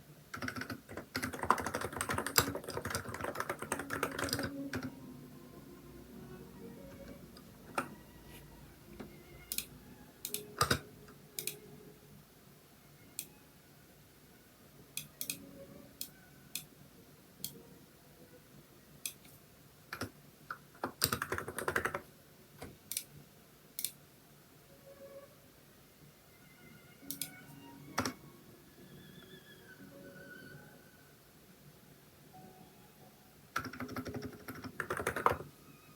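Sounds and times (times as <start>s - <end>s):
keyboard keystrokes: 0.4s - 4.9s, 33.6s - 35.4s.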